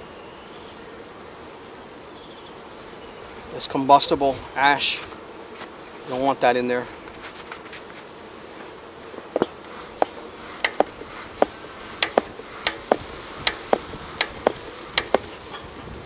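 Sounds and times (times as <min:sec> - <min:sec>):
honeybees humming: 0:00.0 - 0:16.0
sharp clicks and taps: 0:09.2 - 0:15.3.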